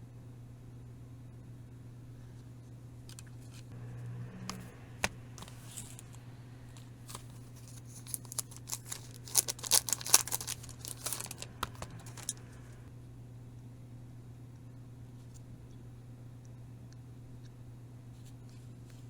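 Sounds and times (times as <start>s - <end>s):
packaging crinkling: 4.5s - 12.6s.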